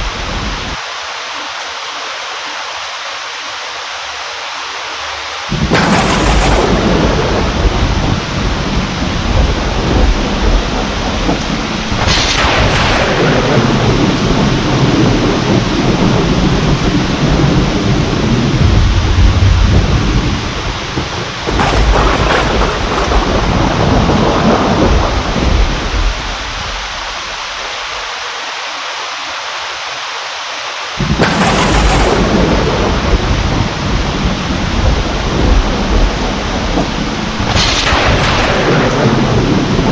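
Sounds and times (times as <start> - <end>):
heavy rain: 0.0 - 39.9
rolling thunder: 5.5 - 27.6, 31.0 - 39.9
thunderclap: 5.5 - 27.6, 31.0 - 39.9.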